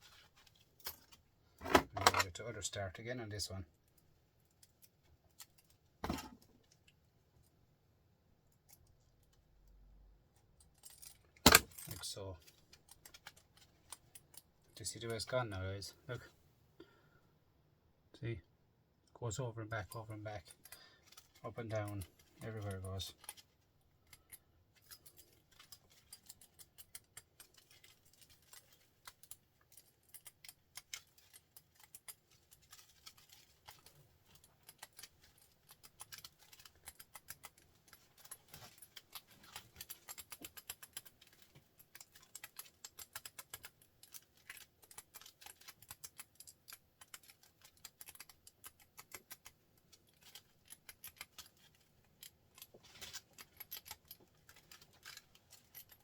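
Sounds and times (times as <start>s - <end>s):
small machine clicking: 39.8s - 49.5s.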